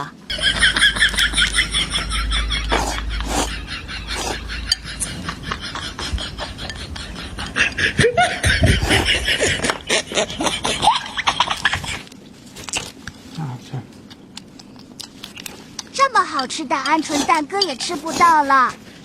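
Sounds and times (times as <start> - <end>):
people laughing: 0.3 - 12.0
chewing and lip-smacking: 11.1 - 18.3.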